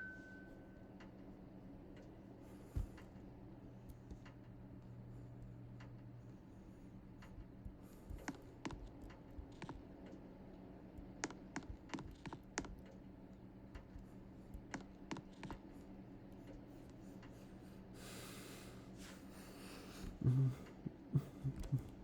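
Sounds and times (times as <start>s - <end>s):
ceiling fans humming: 0.0s - 22.0s
light clicks and taps: 1.0s - 17.4s.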